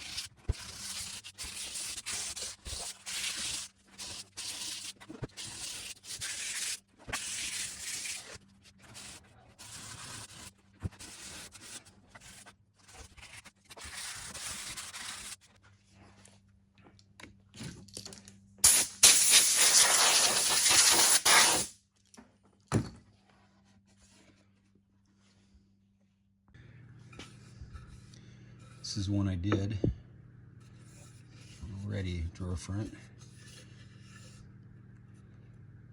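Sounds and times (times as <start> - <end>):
hand sanding wood: 18.7 - 21.7.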